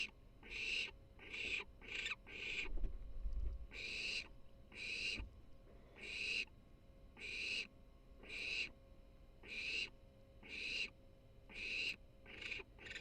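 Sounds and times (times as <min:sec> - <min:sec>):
owl chick hissing calls: 0:00.0 - 0:02.7, 0:03.7 - 0:05.2, 0:05.9 - 0:06.5, 0:07.2 - 0:08.7, 0:09.4 - 0:10.9, 0:11.5 - 0:13.0.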